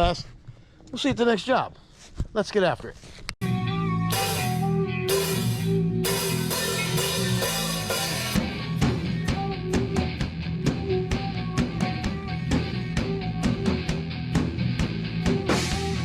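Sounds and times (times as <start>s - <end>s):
drum kit beat: 3.4s - 16.0s
electric guitar chords: 3.4s - 16.0s.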